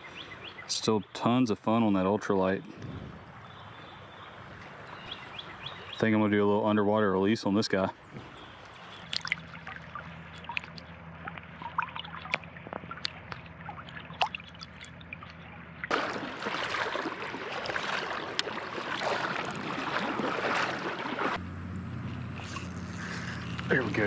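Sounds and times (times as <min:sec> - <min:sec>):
creek water trickling: 0:08.1 - 0:21.4, 0:22.1 - 0:24.0
steady rush of water: 0:09.1 - 0:21.4.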